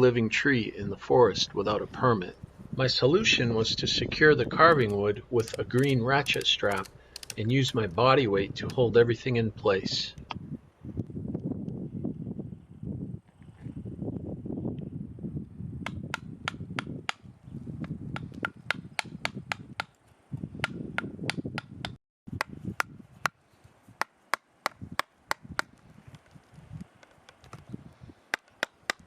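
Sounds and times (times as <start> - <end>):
chisel striking wood: 28.3 - 29.0.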